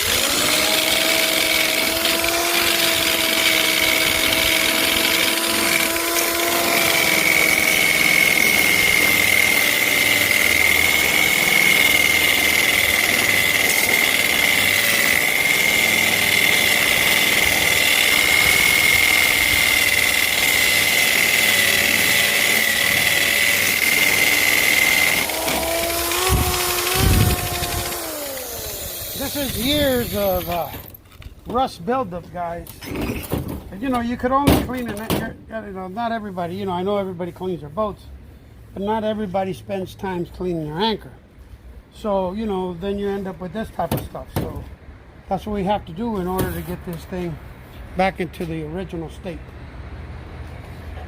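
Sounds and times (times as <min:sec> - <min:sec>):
grinder whining on steel: 0:00.0 - 0:31.0.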